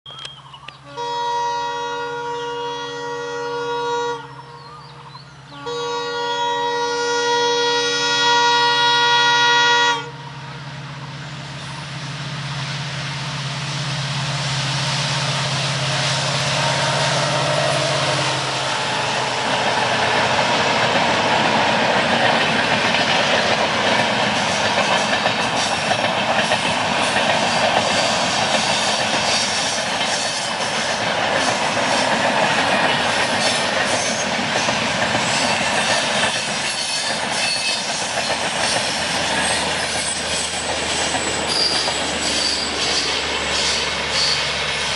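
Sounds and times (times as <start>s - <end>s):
locomotive engine drone: 0.1s - 44.9s
train passing: 0.1s - 44.9s
locomotive horn blast: 0.8s - 4.6s, 5.5s - 10.6s, 15.7s - 19.6s
wheels clicking over rail joints: 19.4s - 44.9s.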